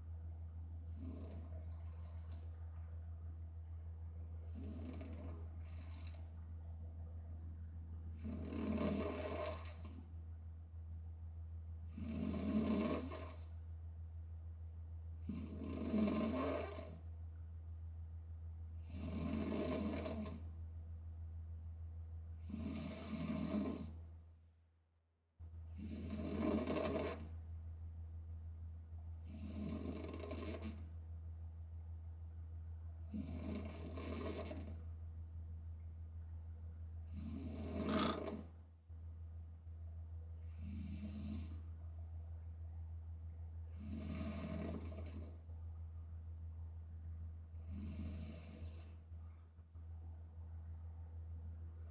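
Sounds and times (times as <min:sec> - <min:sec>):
low steady hum: 0:00.0 - 0:24.8, 0:25.4 - 0:51.9
woman snoring: 0:00.8 - 0:02.5, 0:04.4 - 0:06.3, 0:08.1 - 0:10.1, 0:11.9 - 0:13.6, 0:15.2 - 0:17.0, 0:18.8 - 0:20.5, 0:22.4 - 0:24.0, 0:25.7 - 0:27.3, 0:29.2 - 0:30.9, 0:33.0 - 0:34.8, 0:37.1 - 0:38.5, 0:40.4 - 0:41.6, 0:43.7 - 0:45.4, 0:47.6 - 0:49.0.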